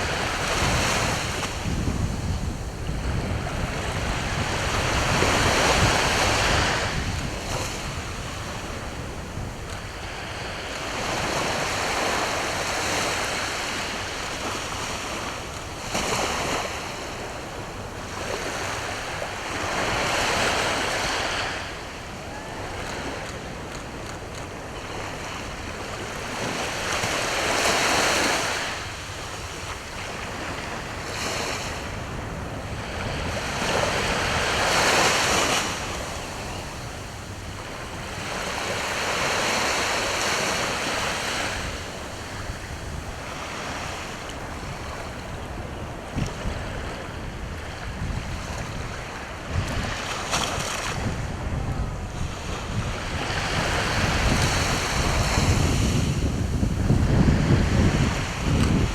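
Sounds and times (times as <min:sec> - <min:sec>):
waves breaking on shore: 0:00.0 - 0:58.9
wind buffeting microphone: 0:00.0 - 0:58.9.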